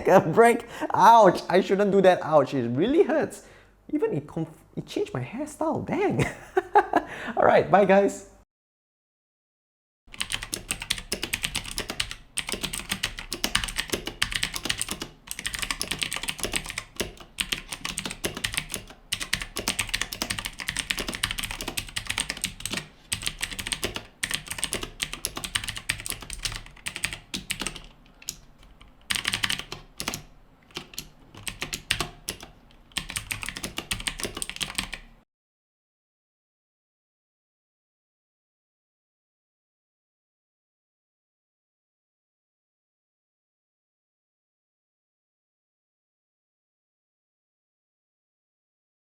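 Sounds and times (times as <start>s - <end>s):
mechanical keyboard typing: 10.1s - 35.1s.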